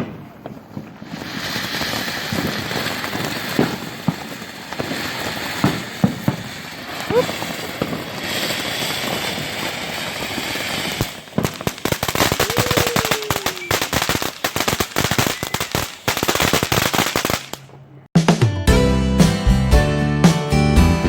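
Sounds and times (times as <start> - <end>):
firecracker pops: 0.0 - 1.3, 3.6 - 4.2, 5.6 - 6.5, 11.4 - 17.8
fireworks crackling: 0.0 - 17.9.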